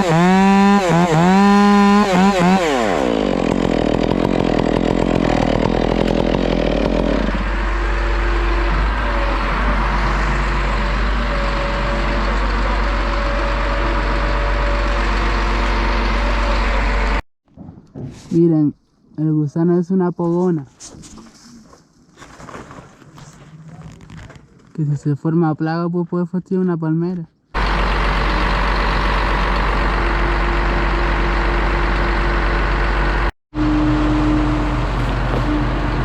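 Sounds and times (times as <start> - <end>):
chainsaw revving and idling: 0.0 - 17.2.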